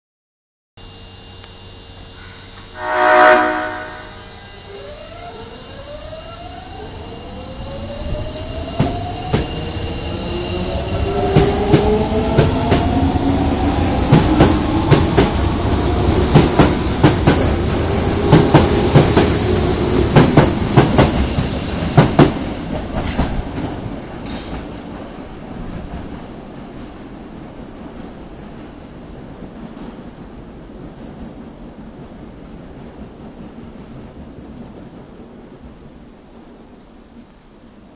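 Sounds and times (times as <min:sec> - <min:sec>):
train motor whine rising: 0:00.8 - 0:22.1
train horn blast: 0:02.7 - 0:04.6.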